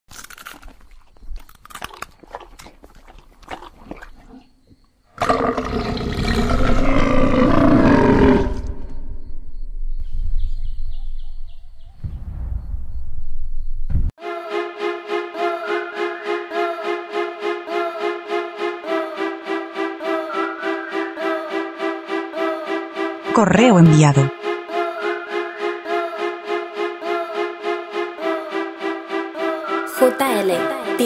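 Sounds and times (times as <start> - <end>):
lion roaring: 5.2 - 8.9.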